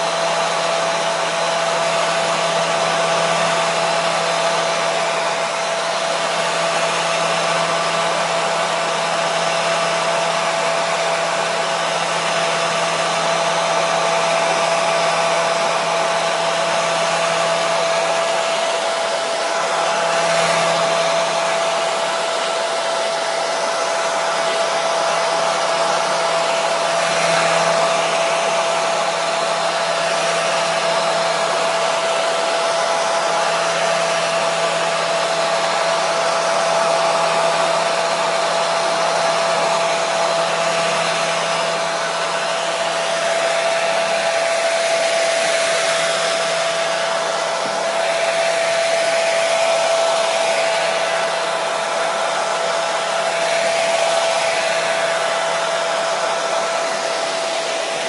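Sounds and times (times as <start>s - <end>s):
hair dryer running: 0.0s - 58.0s.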